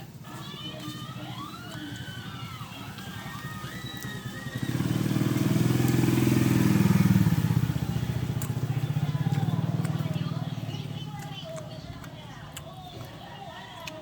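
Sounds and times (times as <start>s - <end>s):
small engine pulsing: 0.8s - 12.0s.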